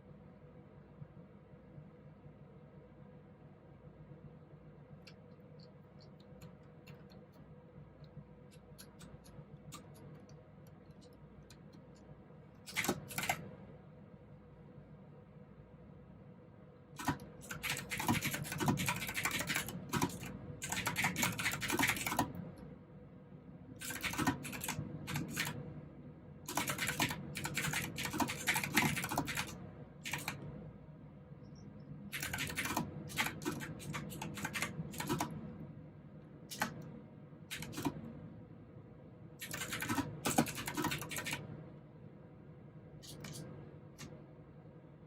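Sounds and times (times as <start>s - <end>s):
fast typing on mechanical keyboard: 6.0s - 7.4s, 12.6s - 13.5s, 17.0s - 22.4s, 23.8s - 25.6s, 26.5s - 30.4s, 32.1s - 35.4s, 36.5s - 36.8s, 37.5s - 38.0s, 39.4s - 41.5s.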